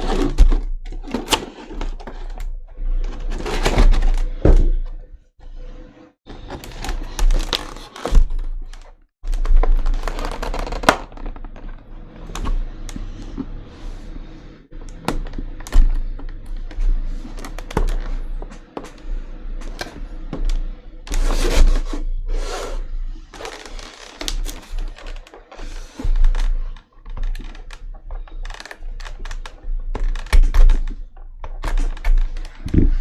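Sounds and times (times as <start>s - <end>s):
plastic packaging cracking open: 9.3s - 11.7s.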